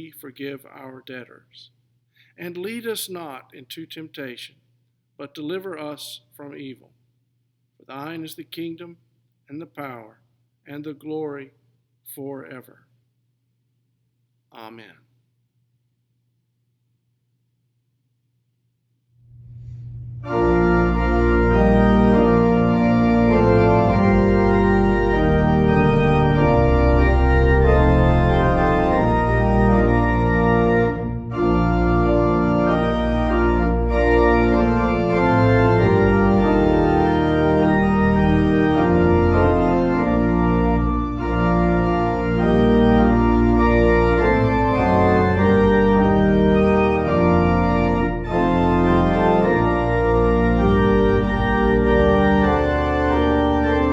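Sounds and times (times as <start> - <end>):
organ playing full chords: 20.2 - 53.9.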